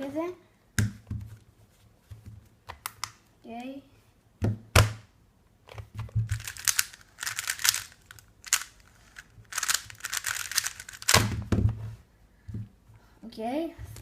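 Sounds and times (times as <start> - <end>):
plastic parts clicking and rattling: 5.7 - 11.5.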